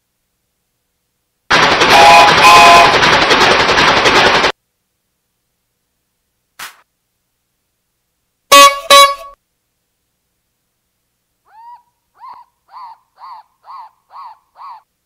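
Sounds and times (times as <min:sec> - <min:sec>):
car horn honks: 0:01.9 - 0:03.0, 0:08.5 - 0:09.4.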